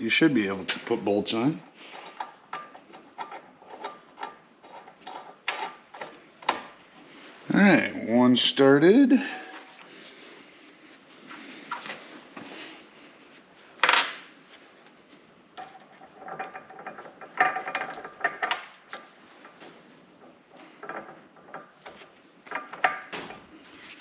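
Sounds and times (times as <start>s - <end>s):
nuts and washers clinking on bolt: 15.6s - 19.6s, 20.2s - 23.3s.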